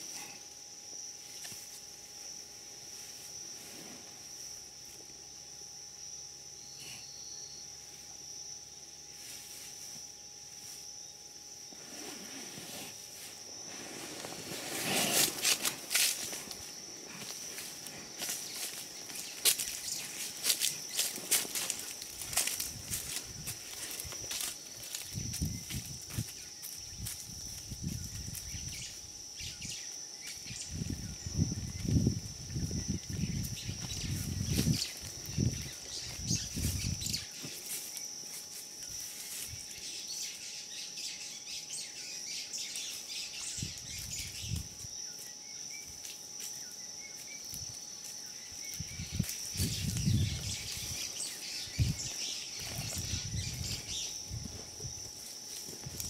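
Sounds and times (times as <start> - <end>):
high insect trill: 0.0 - 56.0
rhino snuffling in sawdust: 3.0 - 4.3, 11.7 - 25.0
animal scuffling in sawdust: 11.7 - 28.8, 42.6 - 56.0.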